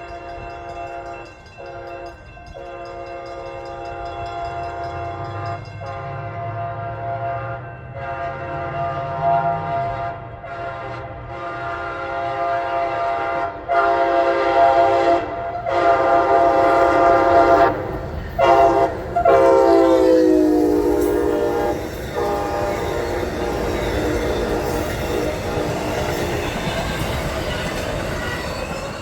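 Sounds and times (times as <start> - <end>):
train rumble: 0.0 - 29.0
locomotive air horn blasts: 5.8 - 26.2.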